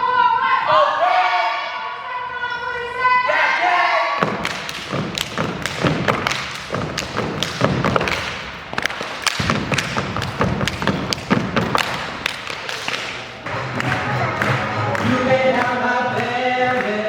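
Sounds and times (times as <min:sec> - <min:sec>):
heavy thumps: 0:04.2 - 0:12.6.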